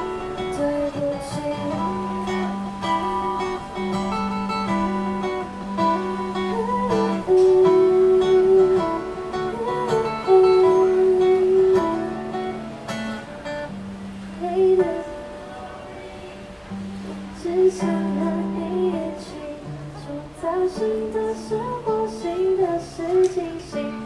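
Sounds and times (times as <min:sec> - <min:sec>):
pop ballad on acoustic guitar: 0:00.0 - 0:24.0.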